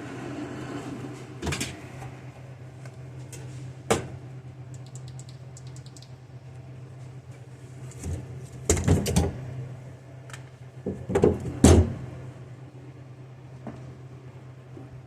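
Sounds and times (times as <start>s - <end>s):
steady low hum: 0.0s - 15.0s
tools clicking against metal: 4.7s - 6.1s.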